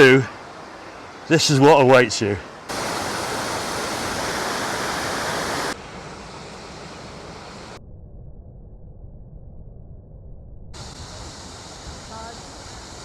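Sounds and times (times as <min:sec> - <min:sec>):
waterfall roaring: 0:00.0 - 0:07.8.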